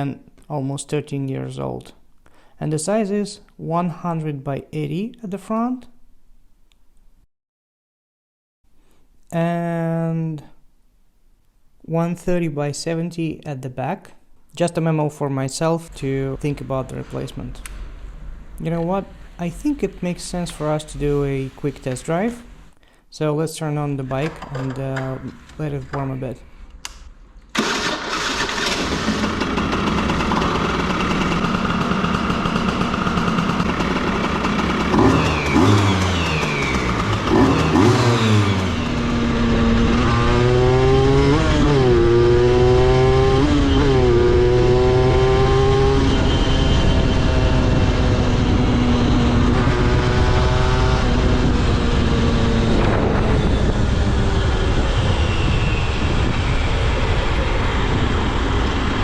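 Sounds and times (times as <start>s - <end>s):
two-stroke motorcycle engine revving: 27.6s - 59.0s.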